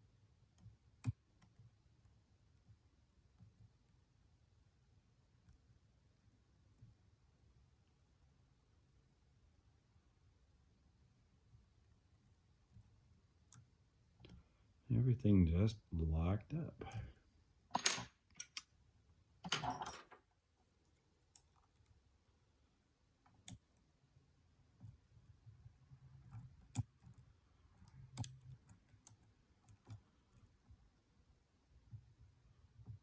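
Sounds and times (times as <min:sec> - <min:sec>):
lock picking tools rattling: 0:17.7 - 0:18.7.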